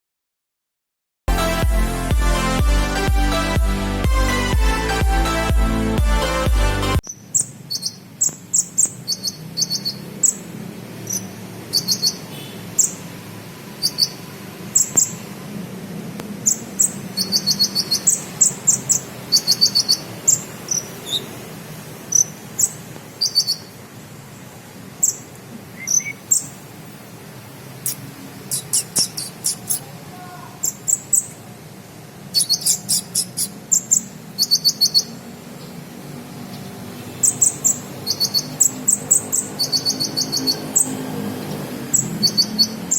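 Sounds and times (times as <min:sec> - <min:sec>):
bird chirping rapidly: 0:07.0 - 0:15.3, 0:16.4 - 0:26.6, 0:27.7 - 0:31.5, 0:32.2 - 0:42.9.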